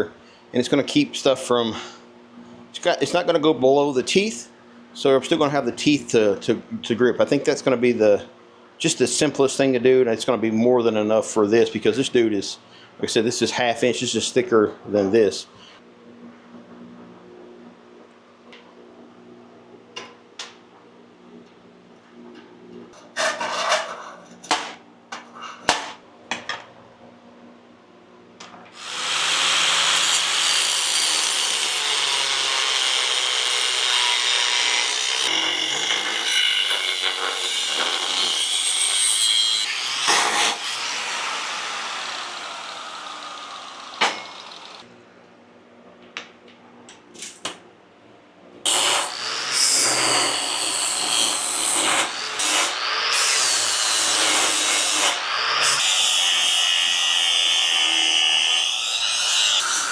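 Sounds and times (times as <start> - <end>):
power tool cutting steel: 28.8 - 44.8, 48.7 - 59.9.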